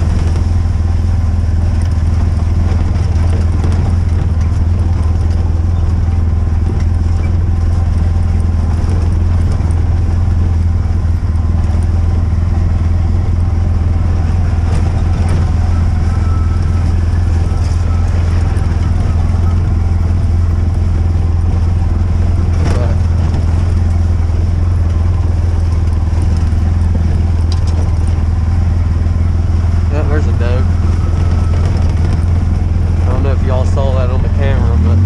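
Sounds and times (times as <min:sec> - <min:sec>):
low motor drone: 0:00.0 - 0:35.0.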